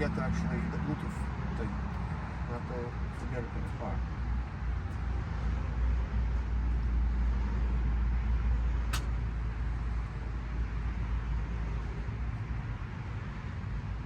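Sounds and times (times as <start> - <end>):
vehicle rumble: 0.0 - 14.0
sharp click: 8.9 - 9.2.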